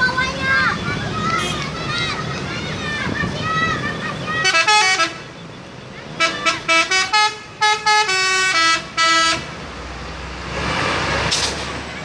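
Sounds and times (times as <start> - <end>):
musical truck horn tune: 4.4 - 5.3, 6.2 - 9.5.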